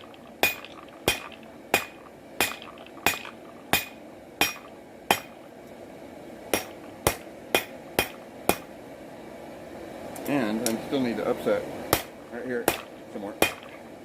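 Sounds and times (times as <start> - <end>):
hammer striking steel on anvil: 0.0 - 5.4, 6.5 - 8.7, 11.9 - 13.8.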